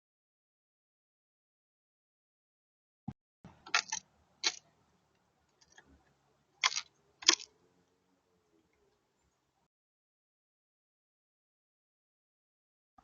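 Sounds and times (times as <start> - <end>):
bird clicking and tapping: 3.5 - 4.7, 5.5 - 7.6.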